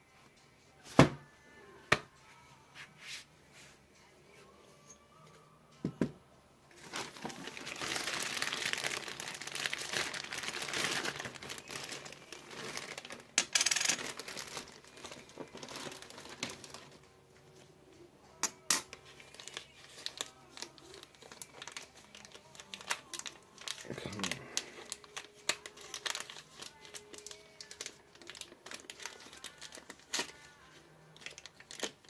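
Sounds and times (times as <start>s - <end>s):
packaging crinkling and tearing: 6.8s - 17.0s, 19.0s - 30.5s, 31.2s - 32.0s.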